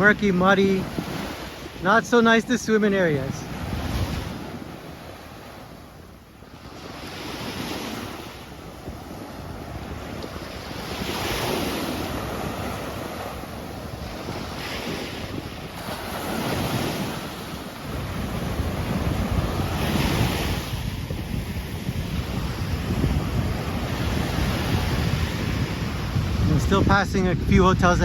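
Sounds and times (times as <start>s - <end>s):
sea waves washing onto beach: 0.0s - 28.0s
wind buffeting microphone: 0.0s - 28.0s.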